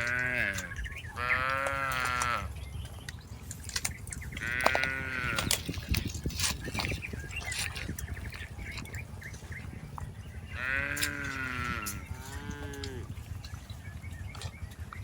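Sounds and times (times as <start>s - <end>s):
cow mooing: 0.0s - 2.5s, 4.4s - 5.7s, 10.5s - 13.1s
steady low rumble: 0.0s - 15.0s.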